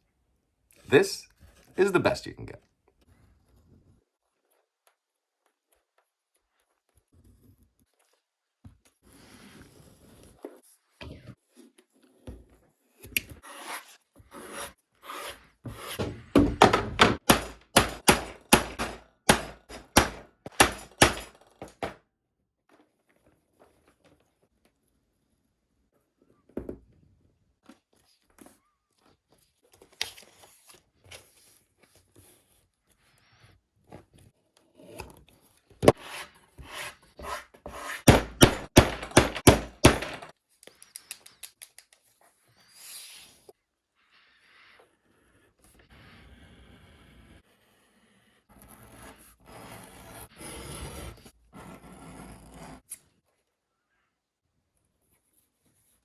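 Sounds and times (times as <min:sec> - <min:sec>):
hand tool scraping workpiece: 0:13.4 - 0:16.3, 0:35.8 - 0:40.2
tools knocking on work surface: 0:15.7 - 0:22.0, 0:38.1 - 0:40.3.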